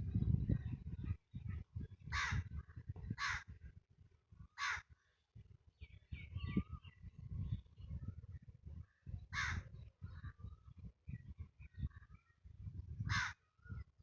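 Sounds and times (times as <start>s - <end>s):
crow cawing: 3.2s - 3.4s, 4.6s - 4.9s, 9.4s - 9.6s, 13.1s - 13.4s
small birds chirping: 4.4s - 14.0s.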